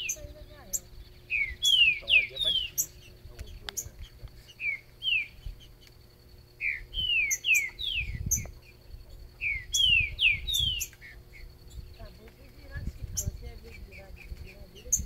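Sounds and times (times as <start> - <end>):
bird singing whistled notes: 0.0 - 5.9, 6.6 - 15.0
low rumbling on microphone: 5.2 - 15.0.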